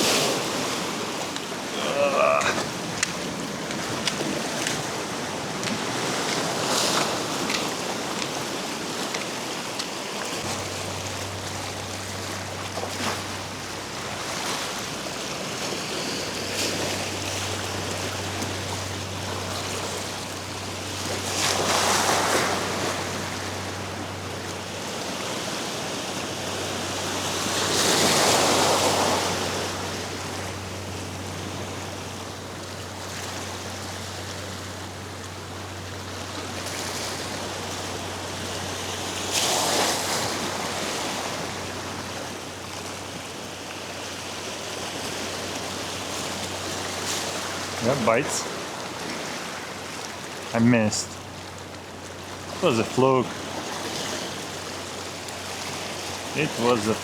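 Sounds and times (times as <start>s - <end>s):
surf washing against rocks: 0.0s - 57.0s
low steady hum: 10.4s - 25.0s.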